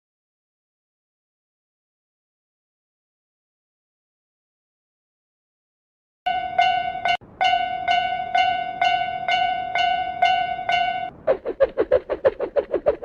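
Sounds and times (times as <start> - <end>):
railroad crossing bell ringing: 6.3 - 11.1
fast pulsing tones: 7.7 - 13.0.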